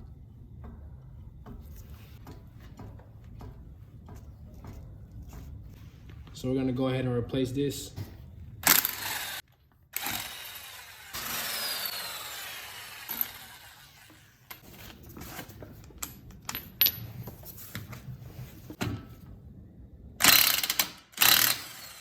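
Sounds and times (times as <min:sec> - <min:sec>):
metal tools clinking and rattling: 0:14.5 - 0:17.6.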